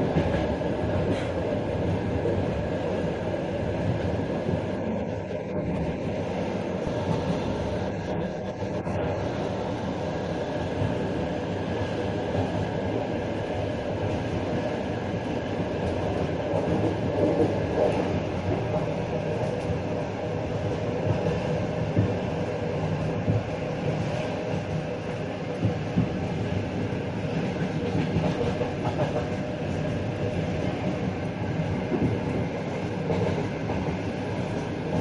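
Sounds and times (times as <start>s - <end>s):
train wheels rumbling on rails: 0.0s - 35.0s
train knocks: 13.9s - 35.0s.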